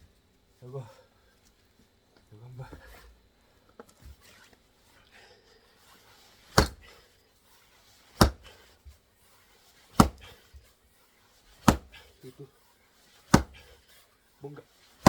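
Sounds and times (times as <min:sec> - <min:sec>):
axe chopping log: 0:06.5 - 0:07.0, 0:08.2 - 0:08.6, 0:09.9 - 0:10.4, 0:11.6 - 0:12.0, 0:13.3 - 0:13.7.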